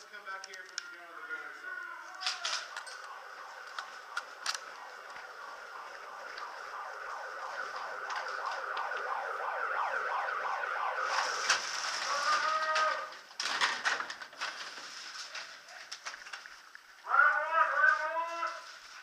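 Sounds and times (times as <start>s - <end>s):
drawn-out shout: 1.1s - 3.6s, 12.1s - 13.2s, 17.0s - 18.7s
warbling siren-like signal: 1.2s - 13.0s
burst of sharp cracks: 2.1s - 5.5s.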